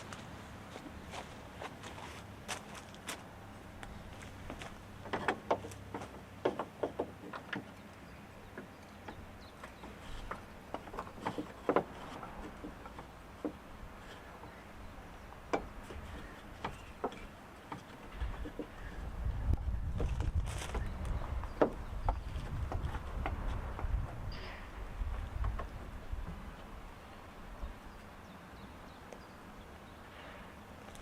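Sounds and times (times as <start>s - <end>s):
car parts clicking and knocking: 3.8s - 14.6s, 15.3s - 26.6s.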